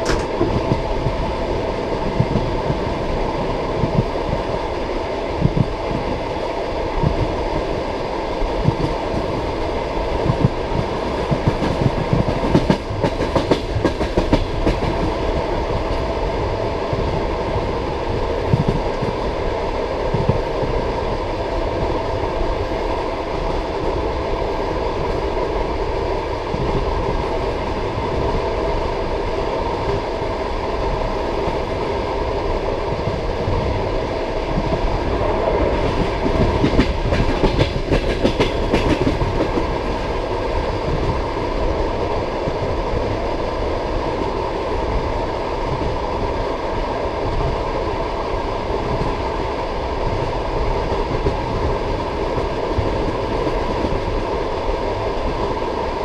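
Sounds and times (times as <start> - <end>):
train wheels clickety-clack: 0.0 - 1.3, 1.9 - 3.0, 3.7 - 4.6, 5.4 - 7.8, 8.4 - 17.2, 18.0 - 20.7, 32.9 - 43.2, 48.7 - 56.0.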